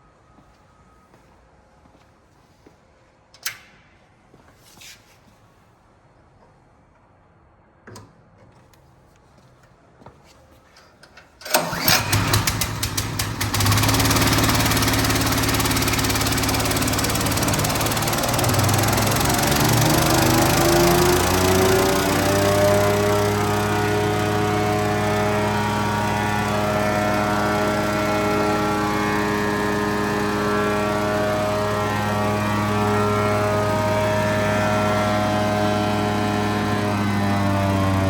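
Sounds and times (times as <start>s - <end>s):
wood chipper engine: 11.5s - 38.0s.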